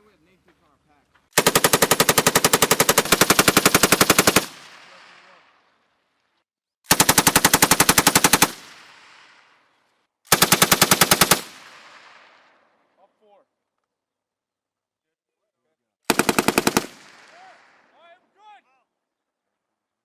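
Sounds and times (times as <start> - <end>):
machine gun automatic fire: 1.4 - 4.8, 6.9 - 8.8, 10.3 - 12.0, 16.1 - 17.5
gunfire echo: 16.1 - 18.1.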